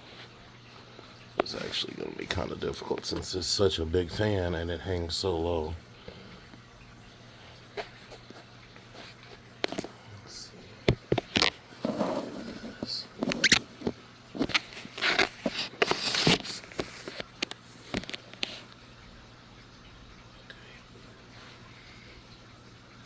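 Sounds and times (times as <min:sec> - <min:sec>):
phone handling clicks and rustling: 0:10.9 - 0:11.6, 0:13.2 - 0:18.5.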